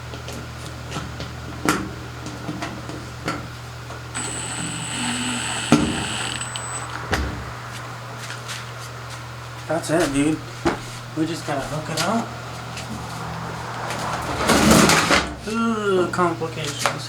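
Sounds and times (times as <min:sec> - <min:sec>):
steady low hum: 0:03.8 - 0:13.7
tools and screws clicking: 0:04.2 - 0:06.9
hissing with high whine: 0:04.2 - 0:08.2.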